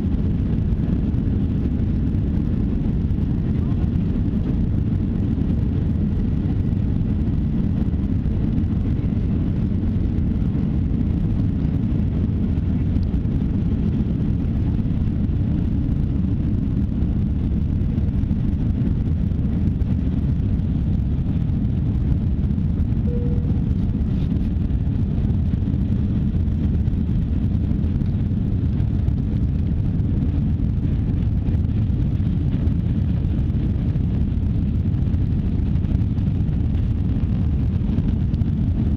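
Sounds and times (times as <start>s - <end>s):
jet engines rumbling: 0.0s - 38.9s
rushing air: 22.8s - 25.9s
faint tone: 23.0s - 24.0s.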